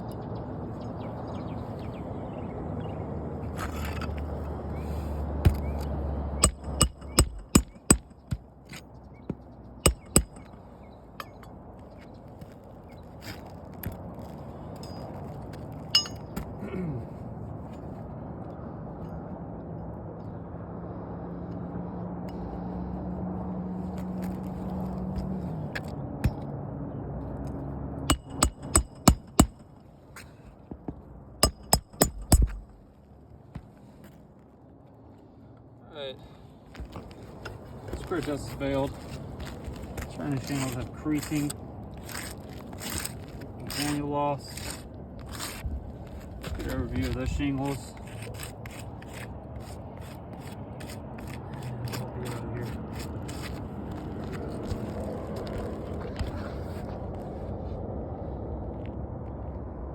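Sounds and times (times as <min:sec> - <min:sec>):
hammer striking metal roof: 0:06.4 - 0:08.4, 0:09.9 - 0:10.5, 0:28.1 - 0:29.7, 0:31.4 - 0:32.8
sharp metallic knocks: 0:06.4 - 0:08.5, 0:09.8 - 0:10.6, 0:15.9 - 0:16.5, 0:28.1 - 0:29.7, 0:31.4 - 0:32.8.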